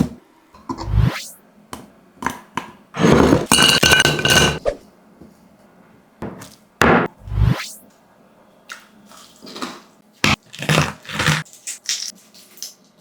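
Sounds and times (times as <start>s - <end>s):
metal utensils clinking on cookware: 3.5s - 4.6s.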